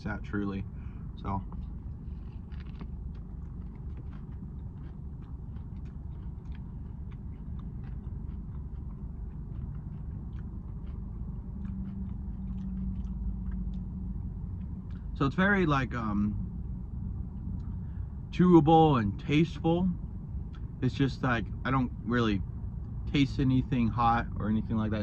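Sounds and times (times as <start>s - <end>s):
steady low rumble: 0.0s - 25.0s
person chewing: 1.5s - 15.1s.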